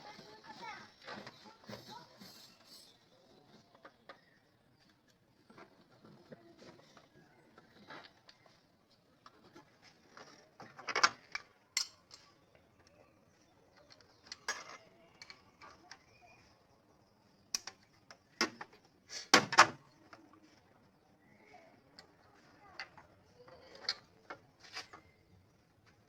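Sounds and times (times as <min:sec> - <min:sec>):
metal tools clinking on metal: 0:11.8 - 0:12.4.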